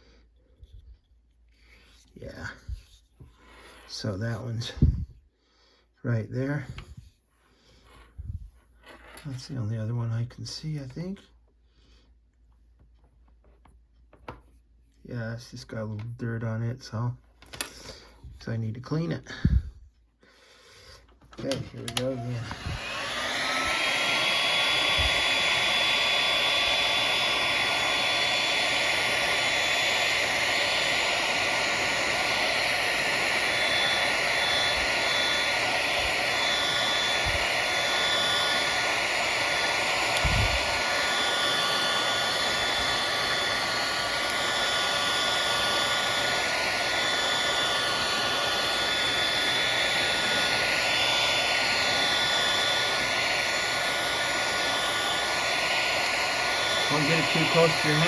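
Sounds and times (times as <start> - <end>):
heat gun blowing with motor whine: 0.0 - 5.2, 17.5 - 19.8, 20.7 - 58.0.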